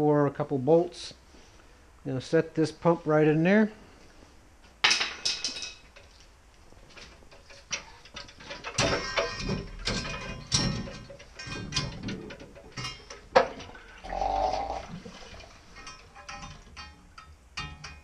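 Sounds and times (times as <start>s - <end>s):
pump clanking and scraping on metal: 7.3s - 18.0s.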